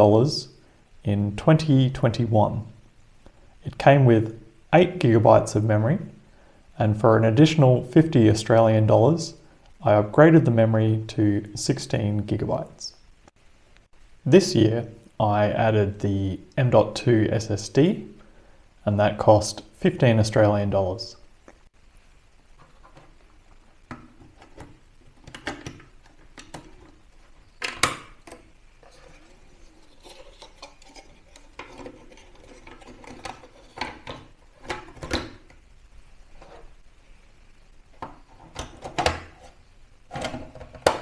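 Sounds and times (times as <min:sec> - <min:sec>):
plastic and metal parts handled: 0:22.6 - 0:35.5.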